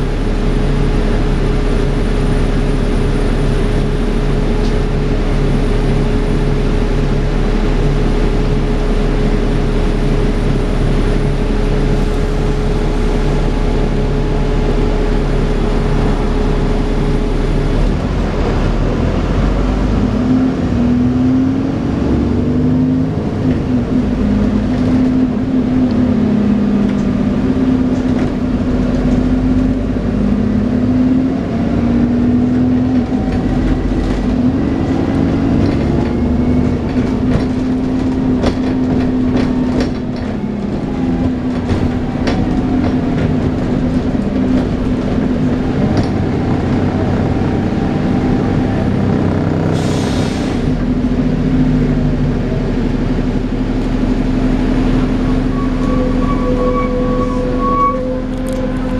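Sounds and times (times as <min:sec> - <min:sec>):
bus drivetrain whine: 0:00.0 - 0:58.9
body clicks and rattles: 0:33.3 - 0:47.5.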